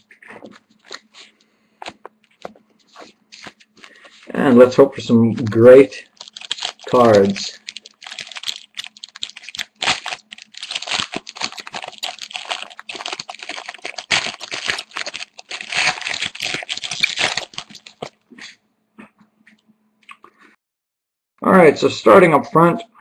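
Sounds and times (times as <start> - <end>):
foil wrapper crinkling and tearing: 0.0 - 18.3.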